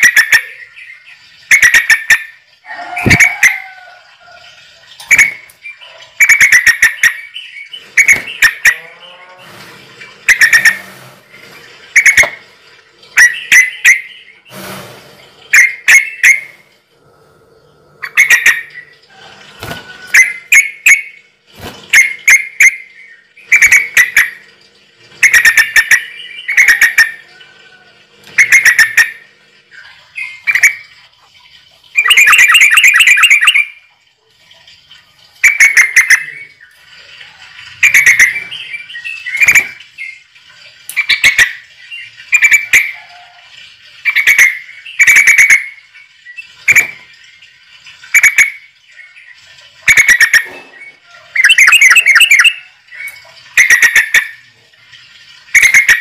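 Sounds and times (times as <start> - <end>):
bird harsh pulsed calls: 5.0 - 12.5, 13.2 - 14.8, 15.4 - 16.6, 18.0 - 19.1, 25.2 - 30.9, 31.9 - 33.8, 37.8 - 40.2, 48.2 - 54.4.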